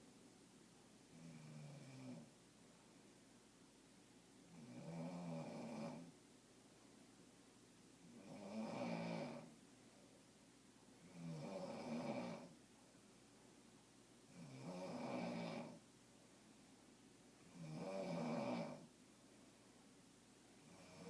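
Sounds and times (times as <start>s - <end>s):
person snoring: 4.5s - 6.1s, 8.2s - 9.5s, 11.0s - 12.5s, 14.3s - 15.8s, 17.5s - 18.9s.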